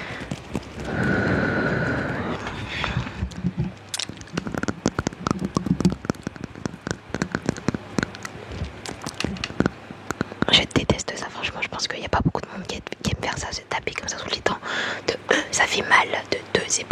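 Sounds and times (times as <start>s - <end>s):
mouth clicks and taps: 2.8s - 11.2s.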